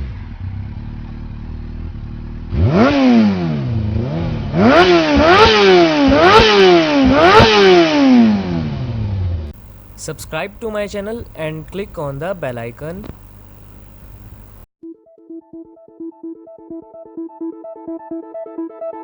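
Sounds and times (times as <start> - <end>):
two-stroke engine idling and revving: 0.0 - 7.8.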